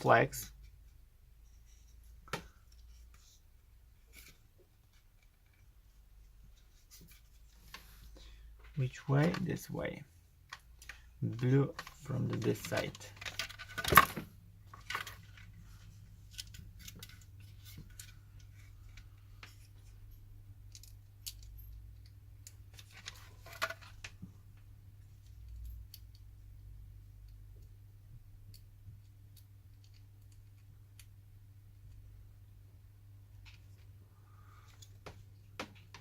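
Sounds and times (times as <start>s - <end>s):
faint low hum: 0.0s - 36.0s
plastic parts clicking: 10.5s - 15.5s.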